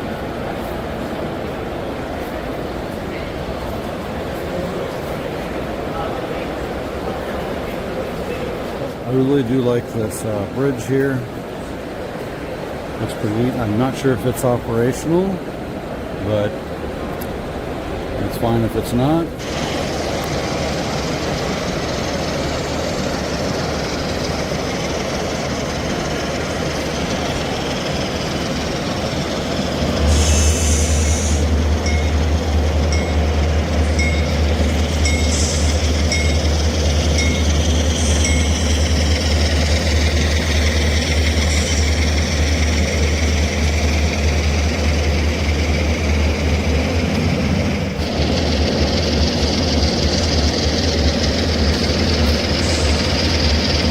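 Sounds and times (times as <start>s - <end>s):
convention hall background noise: 0.0s - 53.9s
model diesel locomotive rumble: 0.0s - 53.9s
locomotive bell ringing tones: 18.3s - 53.9s.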